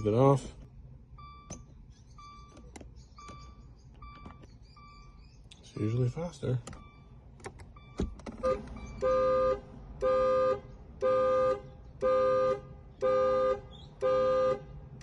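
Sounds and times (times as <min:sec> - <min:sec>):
car horn honks: 0:08.3 - 0:15.0.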